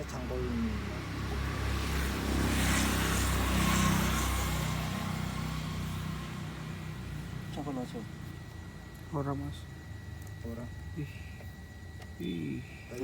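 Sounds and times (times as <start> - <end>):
vehicle engine hum passing: 0.0 - 8.6.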